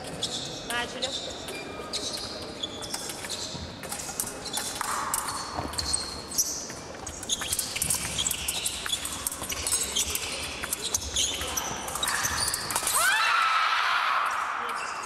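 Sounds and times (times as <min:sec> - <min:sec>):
shoe soles squeaking and stamping: 0:01.8 - 0:13.1.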